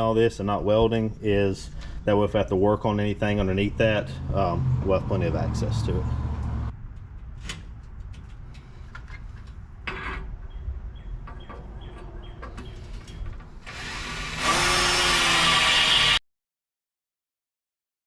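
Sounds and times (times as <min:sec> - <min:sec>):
electric drill boring into steel: 0:13.6 - 0:16.2.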